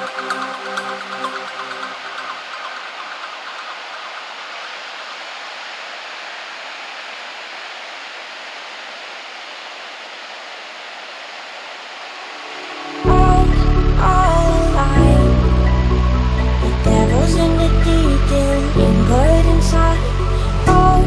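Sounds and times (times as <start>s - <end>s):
rough sea surf rushing: 0.0s - 21.0s.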